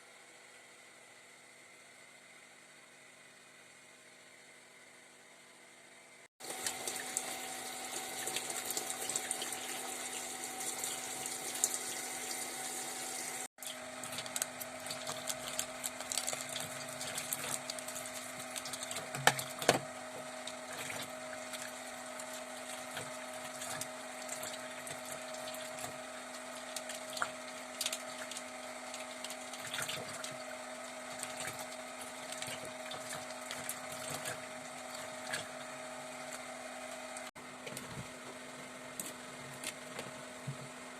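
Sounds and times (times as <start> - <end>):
water running and splashing: 6.4 - 36.4
water pump hum: 6.4 - 40.9.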